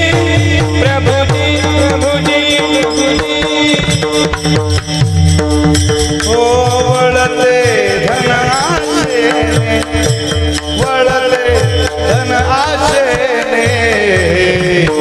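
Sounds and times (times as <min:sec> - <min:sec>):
drum strokes: 0:00.0 - 0:15.0.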